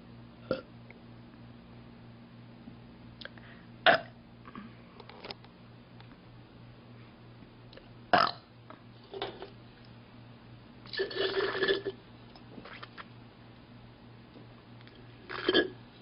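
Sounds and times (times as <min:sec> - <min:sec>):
young woman burping: 0:03.8 - 0:04.6.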